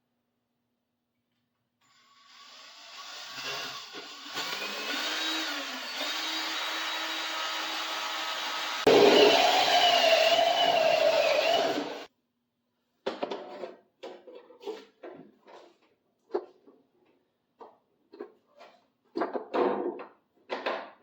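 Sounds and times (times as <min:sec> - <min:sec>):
small power tool motor whining: 0:02.0 - 0:12.1.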